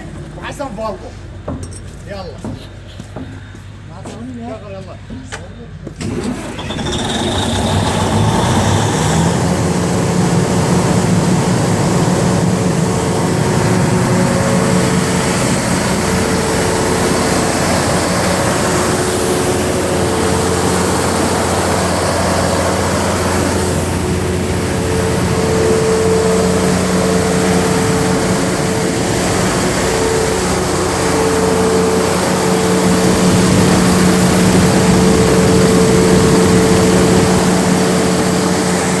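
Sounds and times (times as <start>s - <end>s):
diesel generator running: 0.0s - 39.0s.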